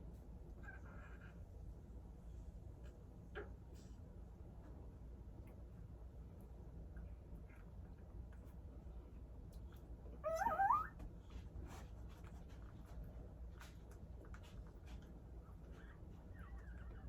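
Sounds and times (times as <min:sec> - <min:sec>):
puppy squealing: 0:10.2 - 0:11.0.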